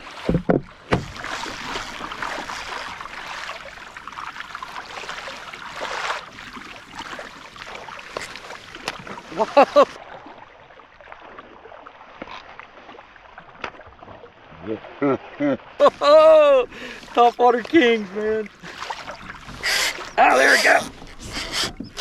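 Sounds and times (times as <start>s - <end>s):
water splashing against kayak hull: 0.0s - 22.0s
man shouting: 15.8s - 16.7s, 20.2s - 20.9s.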